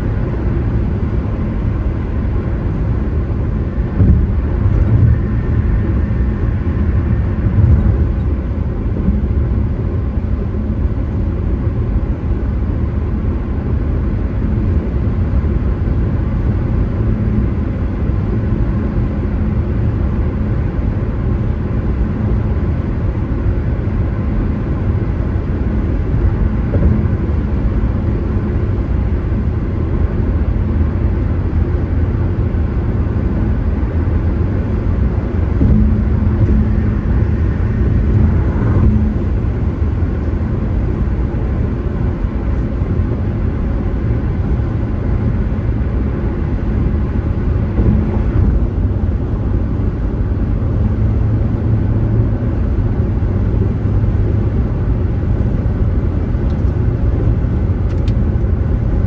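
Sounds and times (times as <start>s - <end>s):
faint hum: 0.0s - 12.6s, 13.3s - 59.0s
car driving rumble: 0.0s - 59.0s.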